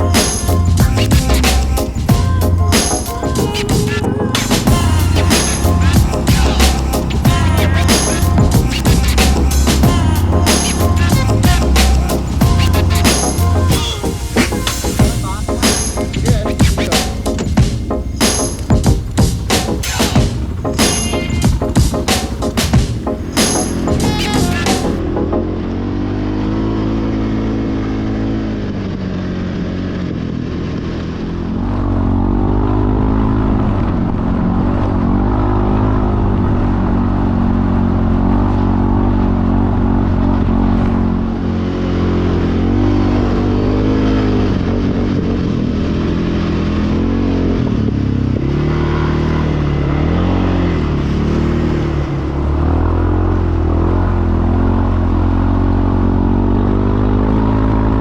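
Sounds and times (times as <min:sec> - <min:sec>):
atv engine revving: 0:00.0 - 0:58.0.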